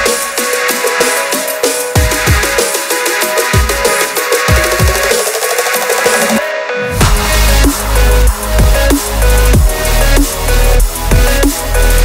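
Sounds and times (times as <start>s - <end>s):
steady electronic beat: 0.0s - 6.4s, 7.0s - 12.0s
heavy bass: 6.9s - 12.0s.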